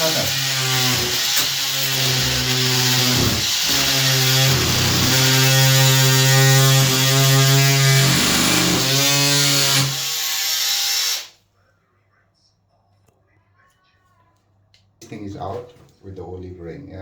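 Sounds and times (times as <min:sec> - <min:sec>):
oscillating multi-tool cutting pipe: 0:00.0 - 0:11.4.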